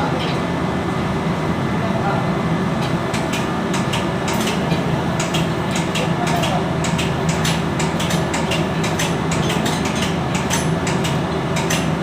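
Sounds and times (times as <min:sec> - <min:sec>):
low machinery hum: 0:00.0 - 0:12.0
sharp metallic clicks and clinks: 0:03.1 - 0:11.9.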